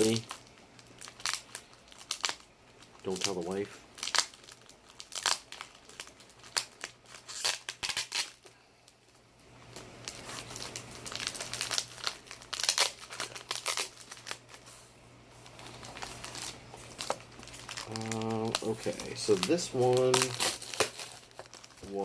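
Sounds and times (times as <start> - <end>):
packaging crinkling and tearing: 0.0 - 14.8, 15.4 - 22.0.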